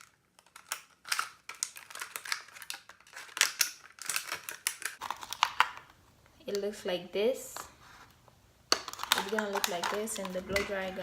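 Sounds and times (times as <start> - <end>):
plastic crackling: 0.0 - 6.7, 8.7 - 11.0
scissors cutting plastic bottle: 8.7 - 11.0.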